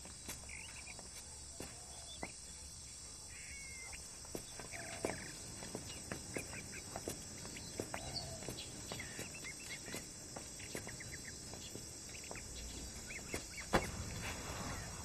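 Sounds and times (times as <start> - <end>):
high insect drone: 0.0 - 15.0
bird chirps and calls: 3.3 - 15.0.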